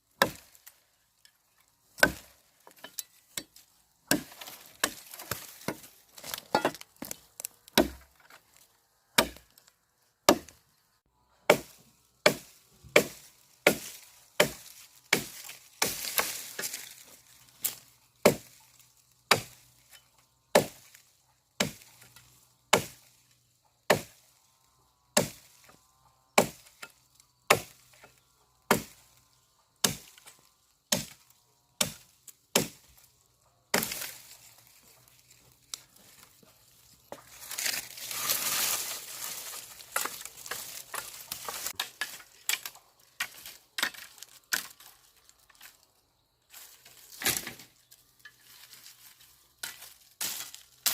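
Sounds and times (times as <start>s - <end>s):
blade chopping into wood: 0.2s - 0.6s, 2.0s - 8.3s, 9.2s - 9.5s, 11.5s - 16.8s, 26.4s - 26.8s, 30.9s - 32.9s, 33.7s - 34.3s, 37.1s - 44.7s.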